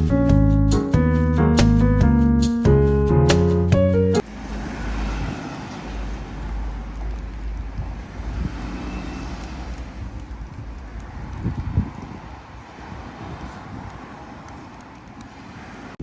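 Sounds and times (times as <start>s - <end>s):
short low bumps: 4.2s - 16.0s
traffic noise with low rumble: 4.2s - 16.0s
wind on microphone: 4.4s - 16.0s.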